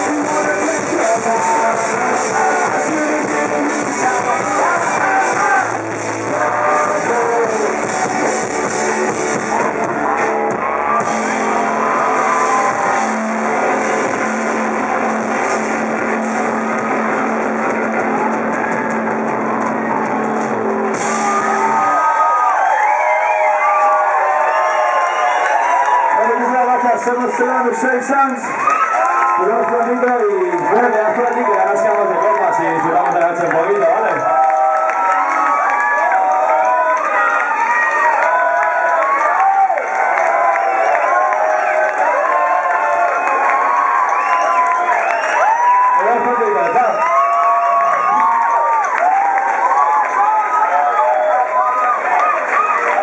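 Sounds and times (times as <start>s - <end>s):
person singing: 0.0s - 8.2s
live rock band playing: 0.0s - 22.4s
crowd cheering and whistling: 0.0s - 53.0s
electric guitars: 0.0s - 53.0s.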